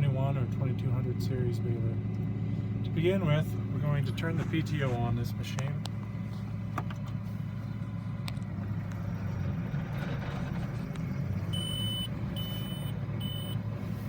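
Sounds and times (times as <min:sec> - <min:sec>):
tractor engine running: 0:00.0 - 0:14.0
short high electronic beeps: 0:11.6 - 0:13.6.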